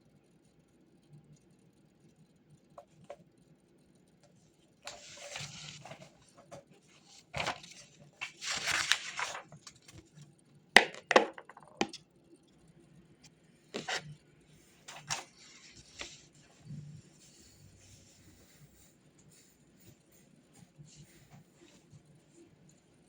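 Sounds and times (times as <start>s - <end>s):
papery rustling: 4.8s - 10.3s, 13.7s - 14.1s, 14.8s - 16.6s.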